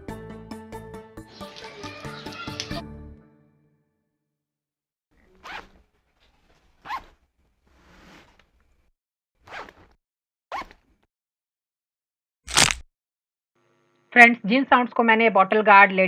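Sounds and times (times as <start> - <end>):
bag zipper pulled: 5.4 - 5.8, 6.8 - 7.2, 9.4 - 10.9, 12.5 - 12.8.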